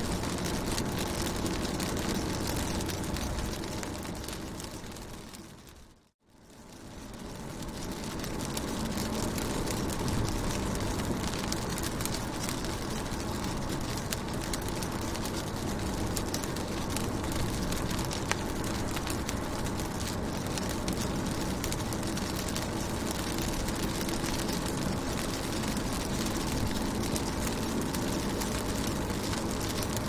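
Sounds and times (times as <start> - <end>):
rain on a car window: 0.0 - 30.0
raindrop taps: 7.2 - 30.0.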